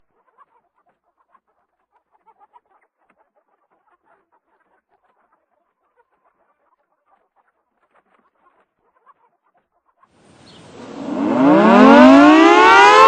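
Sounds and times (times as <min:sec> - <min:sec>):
birds chirping: 0:10.3 - 0:12.3.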